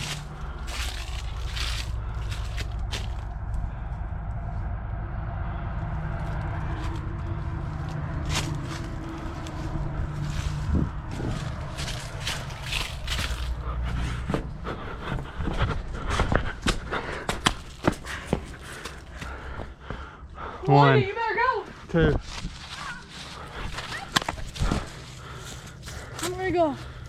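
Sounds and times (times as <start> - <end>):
scuffing and scraping: 0.0 - 3.3, 7.8 - 19.4
steady low hum: 0.0 - 27.0.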